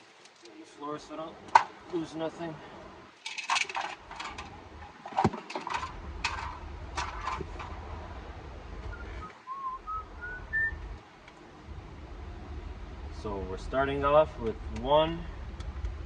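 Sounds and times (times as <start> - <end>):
parts clicking and knocking: 3.2 - 7.8
person whistling rising notes: 8.9 - 10.8.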